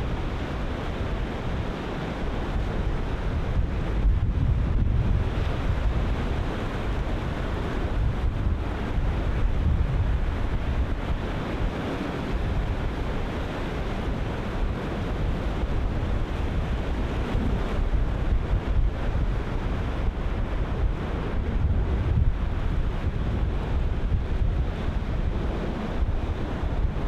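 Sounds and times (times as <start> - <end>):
wind buffeting microphone: 0.0 - 27.0
ocean surf breaking: 16.0 - 27.0.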